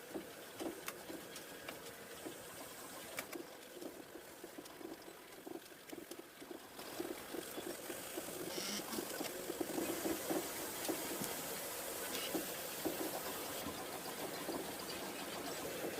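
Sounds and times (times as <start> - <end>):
printer motors pulsing: 0.0 - 15.9
steady hiss: 6.8 - 15.9.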